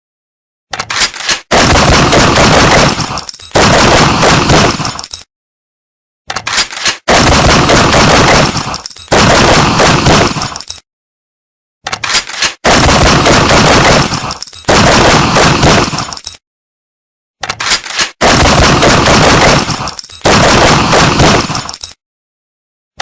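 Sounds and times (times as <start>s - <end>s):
rapid gunshots: 1.4s - 5.2s, 6.9s - 10.8s, 12.5s - 16.4s, 18.1s - 21.9s.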